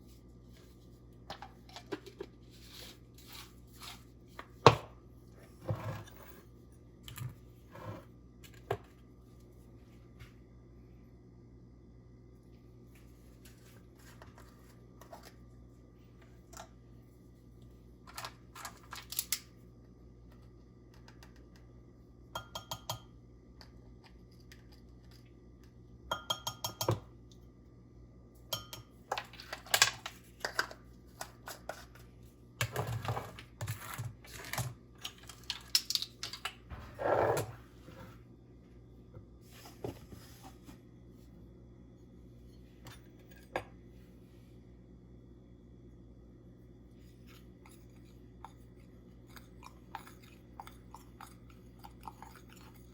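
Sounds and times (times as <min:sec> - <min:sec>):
low steady hum: 0:00.0 - 0:52.9.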